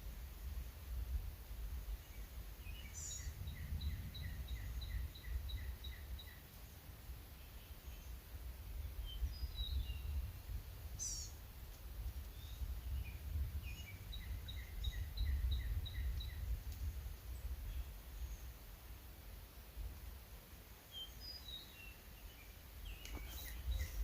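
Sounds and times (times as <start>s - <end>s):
birds chirping: 1.9s - 10.3s, 12.2s - 18.8s, 20.8s - 24.0s.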